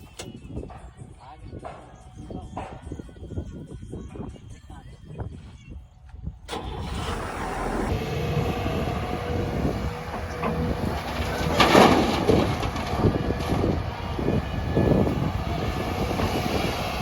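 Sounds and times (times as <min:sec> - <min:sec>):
diesel machinery rumbling: 0:06.5 - 0:17.0.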